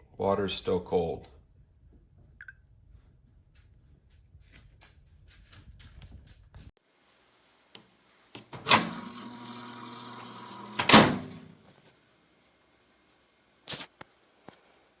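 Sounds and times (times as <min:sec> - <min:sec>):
microwave humming: 0:07.8 - 0:13.6
sharp clicks of door or controls: 0:08.4 - 0:09.1, 0:10.7 - 0:11.5
microwave clunk: 0:08.4 - 0:11.6.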